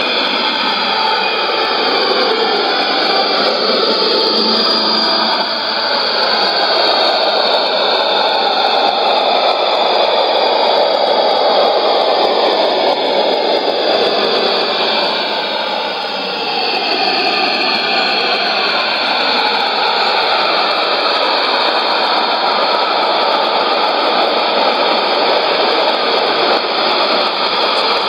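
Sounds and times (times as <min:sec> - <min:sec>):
faint falling pitch glides: 0:00.0 - 0:07.7.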